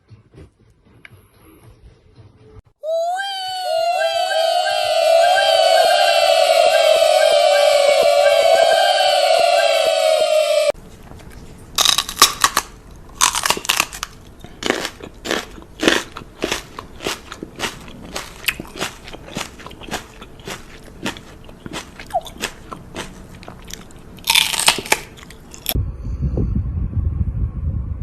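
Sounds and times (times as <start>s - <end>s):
crunchy chewing: 11.2s - 25.8s.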